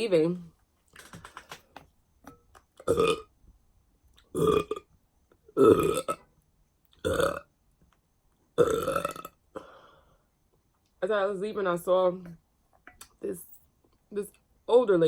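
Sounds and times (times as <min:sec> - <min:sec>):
woman burping: 0:02.8 - 0:03.3, 0:04.3 - 0:04.8, 0:05.6 - 0:06.2, 0:07.0 - 0:07.4, 0:08.6 - 0:09.7.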